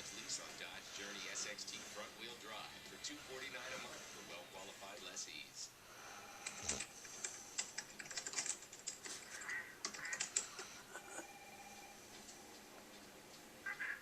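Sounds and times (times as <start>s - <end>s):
dog snoring: 6.1s - 7.1s.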